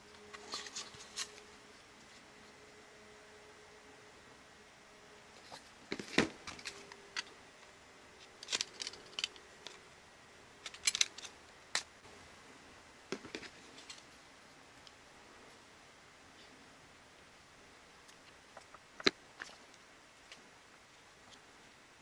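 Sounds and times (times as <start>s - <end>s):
small hard parts clicking: 6.4s - 12.0s.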